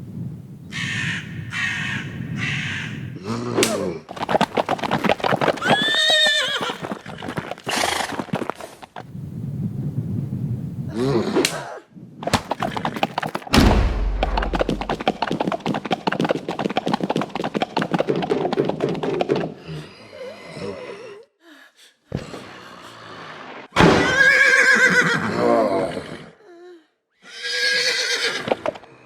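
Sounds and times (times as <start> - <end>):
rapid clattering: 12.3 - 15.6
heavy thud: 13.5 - 15.3.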